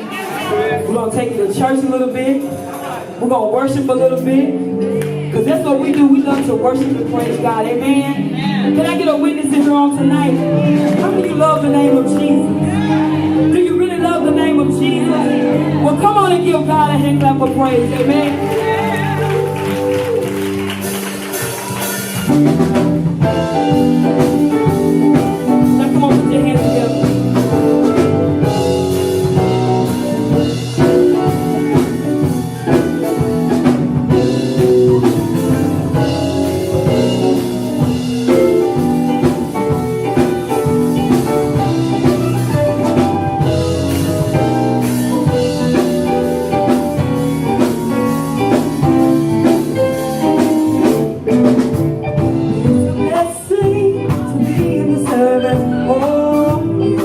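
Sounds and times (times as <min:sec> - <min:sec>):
band with drums and guitar: 0:00.0 - 0:57.0
singers: 0:53.0 - 0:57.0.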